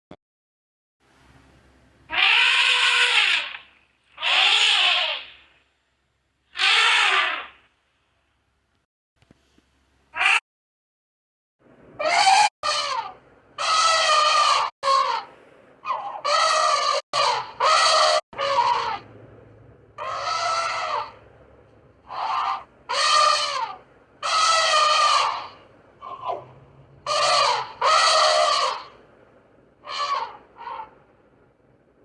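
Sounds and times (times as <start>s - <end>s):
bird harsh calls: 2.1s - 5.6s, 6.5s - 7.7s, 12.0s - 19.1s, 20.0s - 21.2s, 22.0s - 29.0s, 29.8s - 31.0s.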